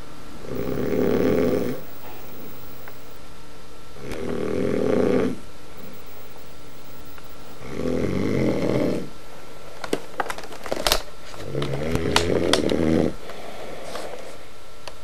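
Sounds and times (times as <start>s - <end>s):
person snoring: 0.6s - 2.4s.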